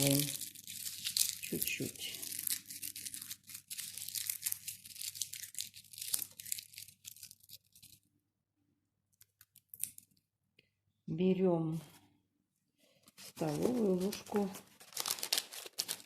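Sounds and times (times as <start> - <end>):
bay leaves crushed by hand: 0.0 - 8.0, 13.2 - 16.0.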